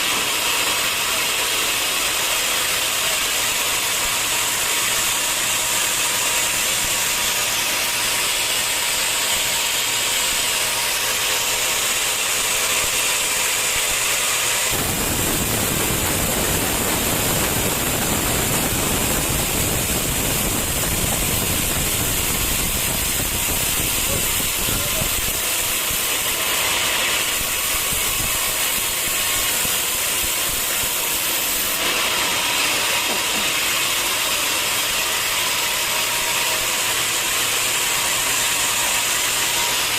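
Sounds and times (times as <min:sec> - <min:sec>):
sawmill machinery hissing: 0:00.0 - 0:39.9
deep rumble: 0:14.8 - 0:22.4.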